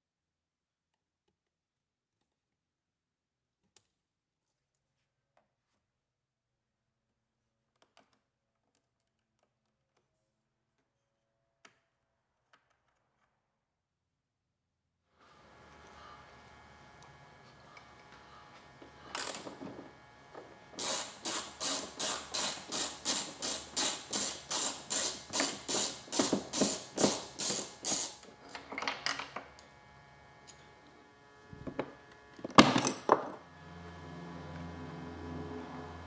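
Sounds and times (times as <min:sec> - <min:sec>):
ratchet clicking: 0:20.8 - 0:28.2.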